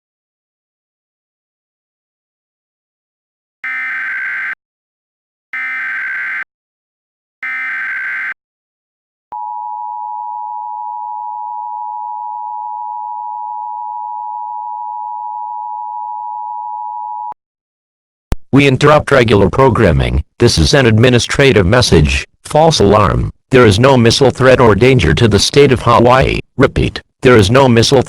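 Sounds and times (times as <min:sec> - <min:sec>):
rapid digital warble bursts: 0:03.6 - 0:04.6, 0:05.6 - 0:06.4, 0:07.4 - 0:08.4
steady two-tone attention signal: 0:03.6 - 0:04.6, 0:05.6 - 0:06.5, 0:07.4 - 0:08.4.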